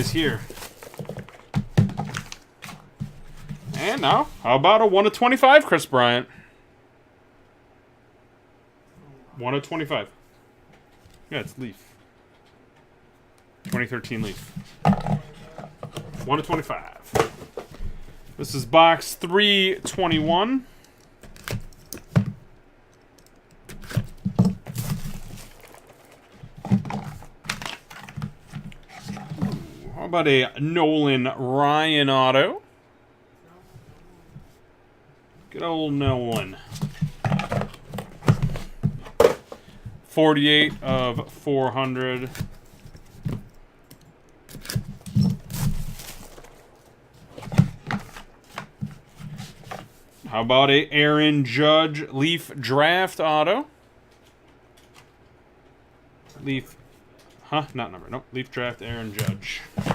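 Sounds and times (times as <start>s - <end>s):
cardboard boxes being handled: 0.0s - 4.4s, 23.8s - 29.8s, 58.9s - 59.9s.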